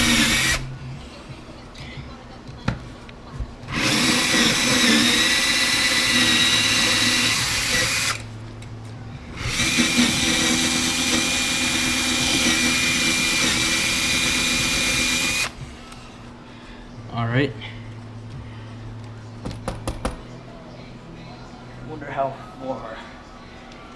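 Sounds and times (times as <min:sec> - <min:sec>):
power drill with hole saw cutting wood: 0:00.0 - 0:00.7, 0:03.7 - 0:08.3, 0:09.4 - 0:15.6.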